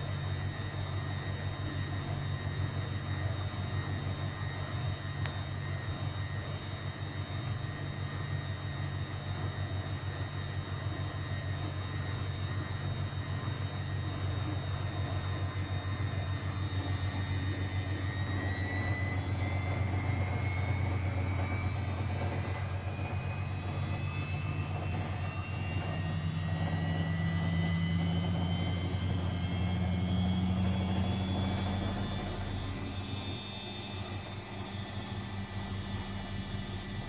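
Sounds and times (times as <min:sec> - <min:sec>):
motor whine rising in pitch: 0:00.0 - 0:37.0
washing machine spinning: 0:00.0 - 0:37.0.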